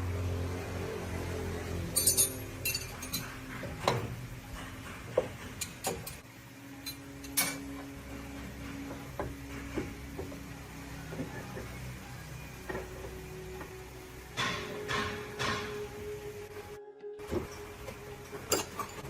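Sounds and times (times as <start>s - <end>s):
low steady hum: 0.0s - 19.0s
metallic clinks of tools: 1.9s - 3.5s, 6.8s - 7.6s, 18.5s - 19.0s.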